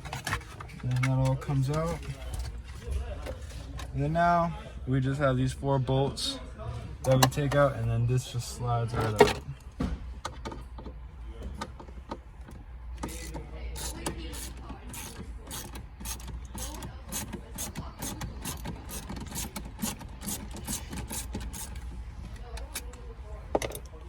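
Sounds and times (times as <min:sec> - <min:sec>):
ratchet tool clicking: 0:13.0 - 0:21.8.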